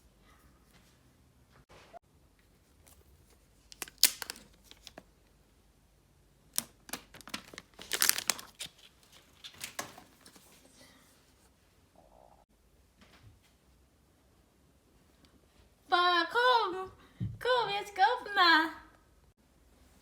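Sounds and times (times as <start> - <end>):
packaging crinkling and tearing: 2.8 - 5.1, 6.5 - 10.5.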